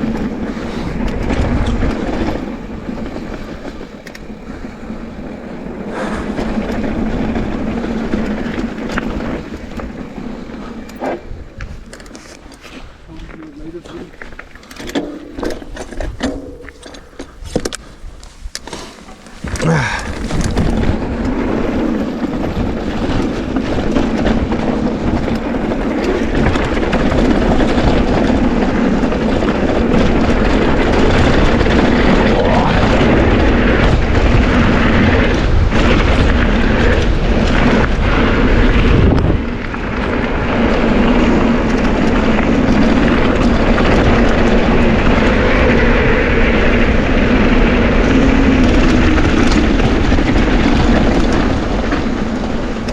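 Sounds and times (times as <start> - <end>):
bike rattling: 0.0 - 52.9
tyres rushing on dirt: 0.0 - 52.9.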